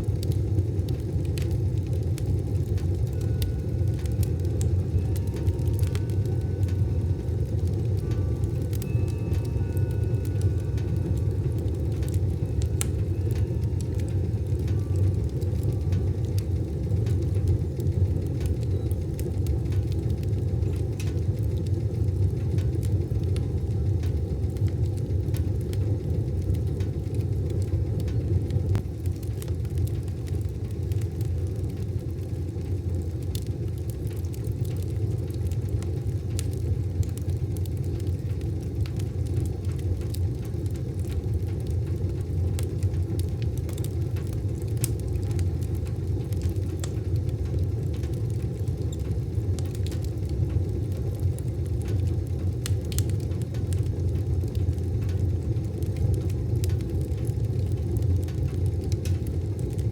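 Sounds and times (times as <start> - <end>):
fire crackles and pops: 0.0 - 59.9
wood stove fire rumbling: 0.0 - 59.9.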